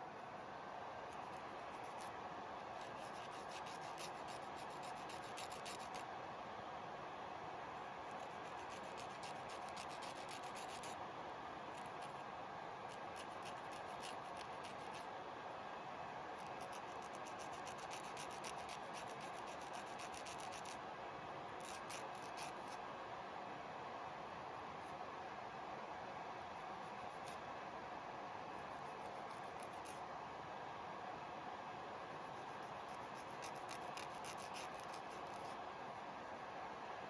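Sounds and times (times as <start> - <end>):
nail file scratching: 1.1 - 2.1, 2.8 - 6.0, 8.1 - 11.0, 11.7 - 12.2, 12.9 - 15.1, 16.4 - 20.8, 21.6 - 22.8, 26.7 - 27.4, 28.6 - 30.0, 32.1 - 35.6.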